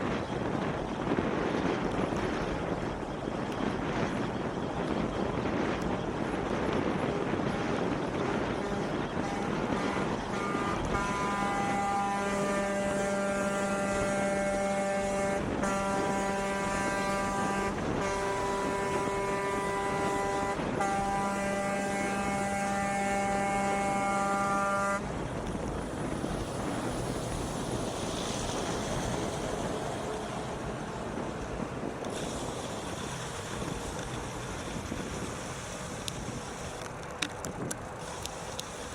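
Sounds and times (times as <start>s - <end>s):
wind and road noise: 0.0s - 38.9s
truck horn blast: 8.5s - 25.2s.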